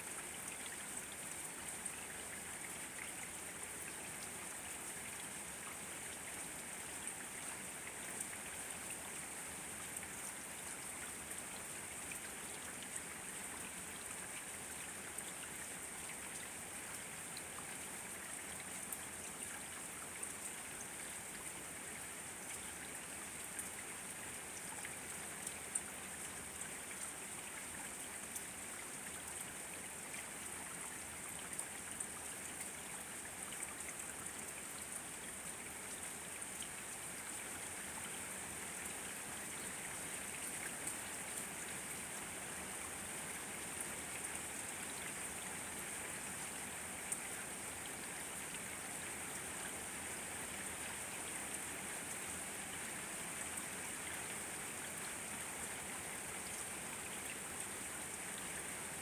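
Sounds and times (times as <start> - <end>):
steady rainfall hiss: 0.0 - 59.0.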